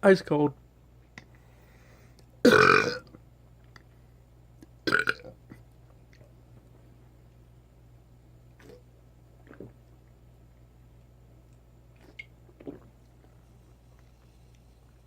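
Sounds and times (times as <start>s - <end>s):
man burping: 2.4s - 3.1s, 4.9s - 5.3s.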